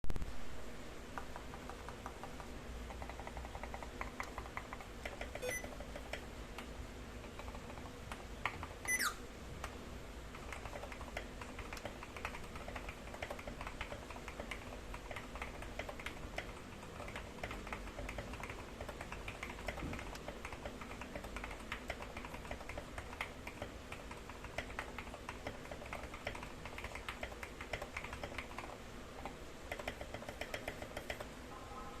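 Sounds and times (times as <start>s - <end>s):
high falling squeak: 8.9s - 9.2s.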